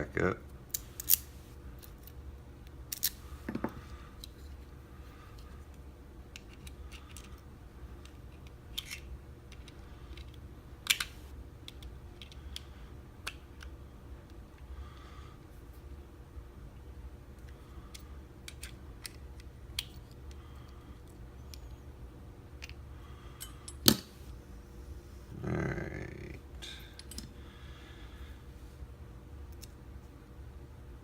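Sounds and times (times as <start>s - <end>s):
steady low hum: 0.0s - 31.0s.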